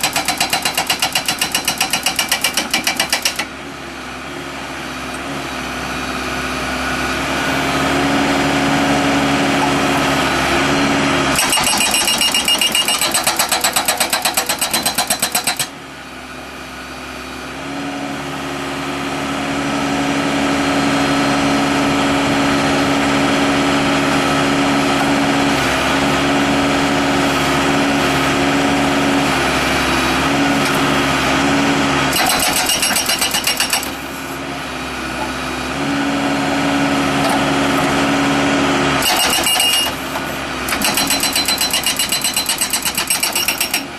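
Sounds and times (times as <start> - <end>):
hydraulic hammer pounding concrete: 0.0 - 3.6, 11.3 - 15.8, 32.1 - 34.2, 39.0 - 43.9
diesel engine running: 0.0 - 43.9.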